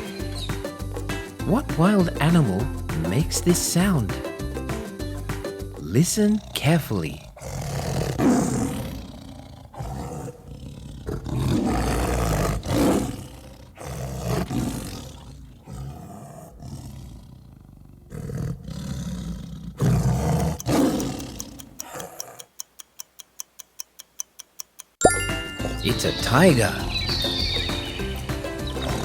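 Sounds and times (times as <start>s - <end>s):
tiger roaring and growling: 5.8s - 22.5s
clock ticking: 20.2s - 26.6s.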